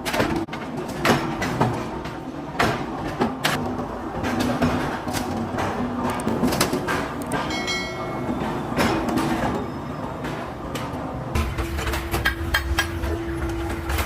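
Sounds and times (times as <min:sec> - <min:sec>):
machine hum: 0:01.3 - 0:14.0
metallic ring: 0:07.4 - 0:08.4.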